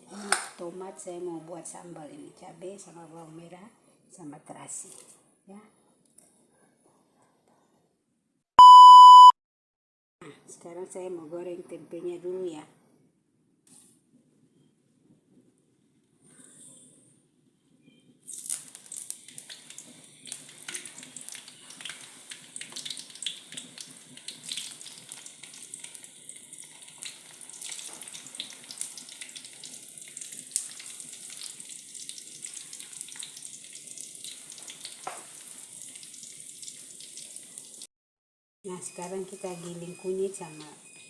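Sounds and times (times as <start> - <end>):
food sizzling in hot oil: 18.2 - 37.9.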